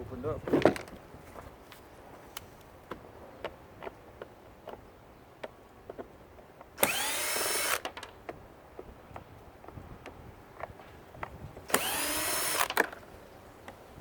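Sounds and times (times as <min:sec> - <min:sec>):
cordless drill motor whine: 0:06.8 - 0:08.0, 0:11.7 - 0:13.0.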